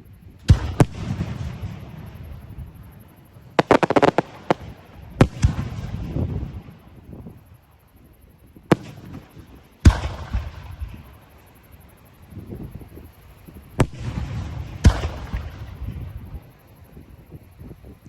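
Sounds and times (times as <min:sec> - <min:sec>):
firework bangs: 0:00.4 - 0:06.8, 0:08.7 - 0:11.2, 0:13.8 - 0:16.4
fireworks crackling: 0:00.4 - 0:07.4, 0:08.7 - 0:17.4
rumbling echo: 0:00.5 - 0:07.3, 0:13.8 - 0:16.5.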